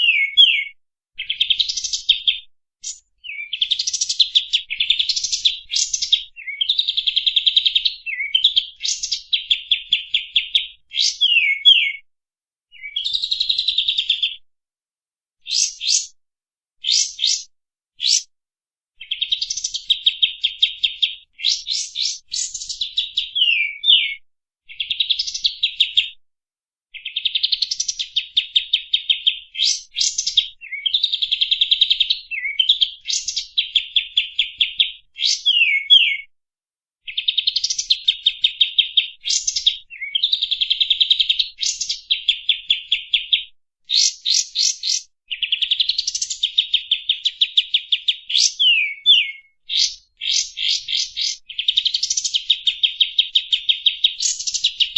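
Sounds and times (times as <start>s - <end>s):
bird singing buzzy trills: 0.0s - 0.7s
bird downward-slurred whistles: 0.0s - 0.8s, 11.0s - 12.0s, 16.8s - 18.3s, 23.4s - 24.2s, 35.2s - 36.3s, 48.4s - 51.4s.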